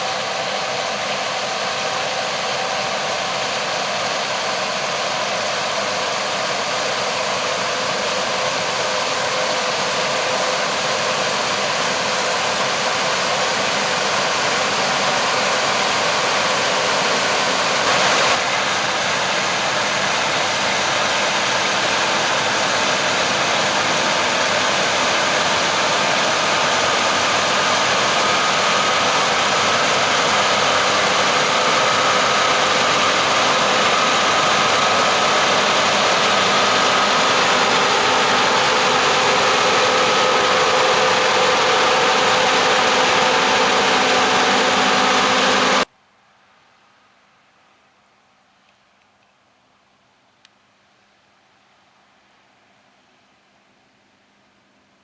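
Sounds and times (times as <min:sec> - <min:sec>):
heavy farm machinery running: 0:00.1 - 0:45.9.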